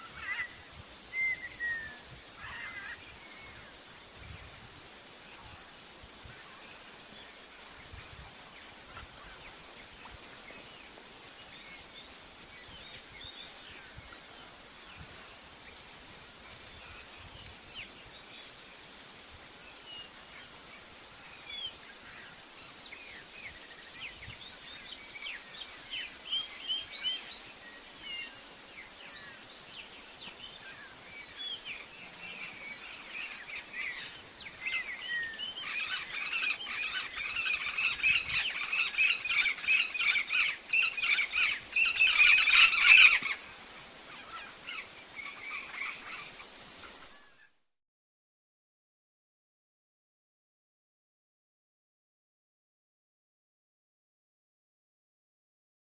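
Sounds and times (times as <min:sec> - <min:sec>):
insects trilling: 0:00.0 - 0:47.5
pulsing insect call: 0:00.0 - 0:47.5
birds chirping: 0:29.8 - 0:43.4.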